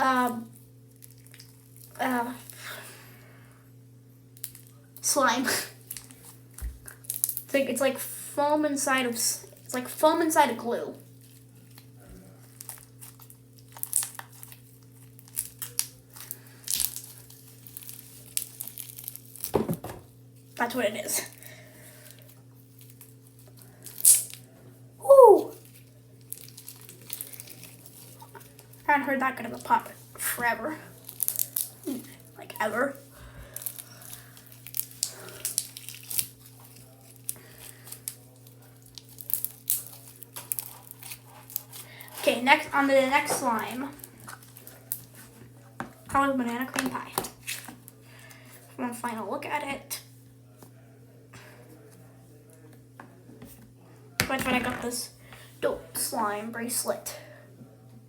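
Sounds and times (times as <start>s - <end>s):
foam bead slime crackling: 11.1s - 19.5s, 22.0s - 24.5s, 25.2s - 28.8s, 30.8s - 45.2s.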